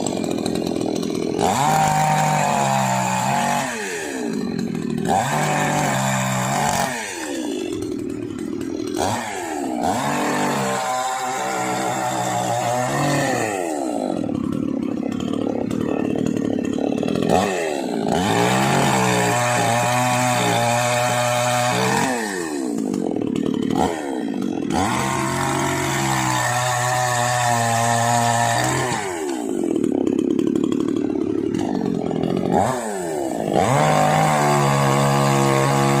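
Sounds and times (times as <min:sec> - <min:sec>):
chainsaw engine revving: 0:00.0 - 0:36.0.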